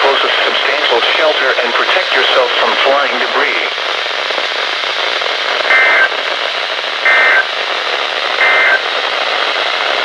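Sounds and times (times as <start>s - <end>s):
steady radio hiss: 0.0s - 10.0s
two-tone data bursts: 5.7s - 6.1s, 7.1s - 7.5s, 8.4s - 8.9s.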